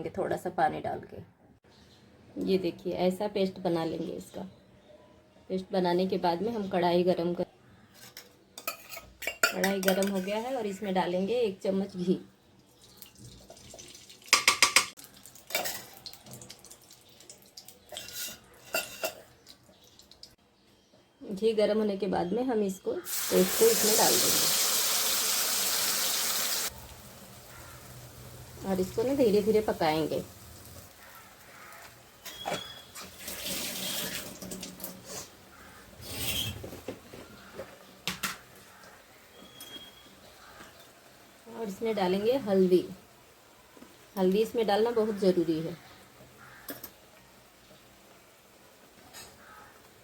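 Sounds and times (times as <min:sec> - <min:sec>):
metal spoon scraping a pan: 0:07.8 - 0:10.7, 0:17.9 - 0:19.3, 0:36.0 - 0:36.8
spoon knocking against pan: 0:14.4 - 0:15.0
paste sizzling in hot oil: 0:23.1 - 0:34.4.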